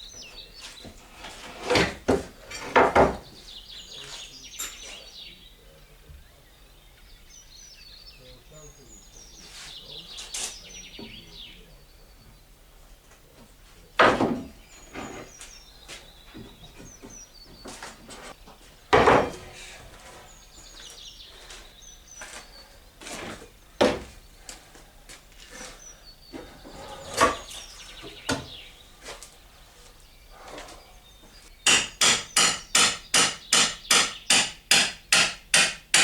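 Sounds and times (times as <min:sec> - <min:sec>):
birds chirping: 0:00.0 - 0:35.4
wooden knocks and thuds: 0:01.6 - 0:03.4, 0:14.0 - 0:15.3, 0:16.3 - 0:19.6, 0:23.2 - 0:24.2, 0:26.4 - 0:28.6.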